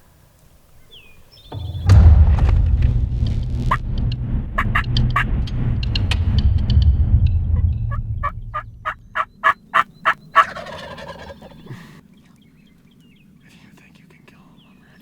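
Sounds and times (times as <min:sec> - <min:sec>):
low rumble: 0:01.5 - 0:10.3
turkey gobble: 0:04.6 - 0:05.3, 0:08.8 - 0:12.0
wild turkeys calling: 0:04.6 - 0:05.3, 0:08.5 - 0:12.0.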